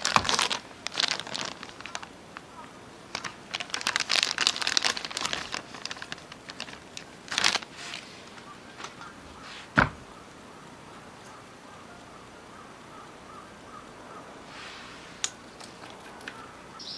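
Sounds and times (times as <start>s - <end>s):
material crinkling and rustling: 0.0s - 2.5s, 3.1s - 9.8s.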